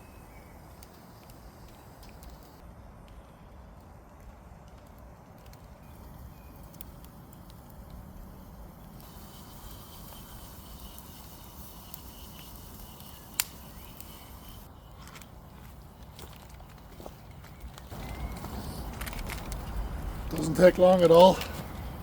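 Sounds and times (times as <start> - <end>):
wood fire crackling: 0.0 - 22.0
sharp pop from fire: 13.1 - 14.1.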